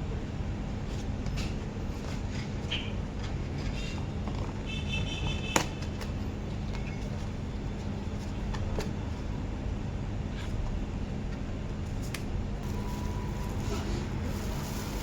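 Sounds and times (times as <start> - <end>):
low rumble of street traffic: 0.0 - 15.0.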